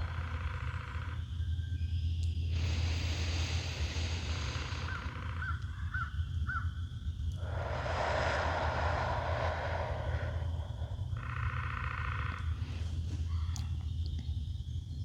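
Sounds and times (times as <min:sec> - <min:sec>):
steady low rumble: 0:00.0 - 0:15.0
soft rushing sound: 0:07.4 - 0:11.5.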